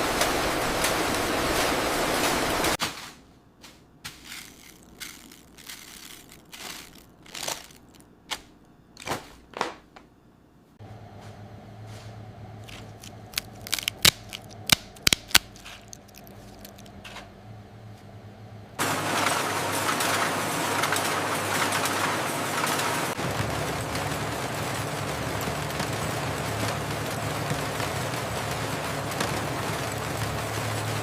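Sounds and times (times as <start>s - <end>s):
low machine hum: 0.0s - 31.0s
crisp crunching and crinkling: 4.1s - 8.4s, 12.6s - 17.0s
sharp clicks: 12.7s - 16.9s.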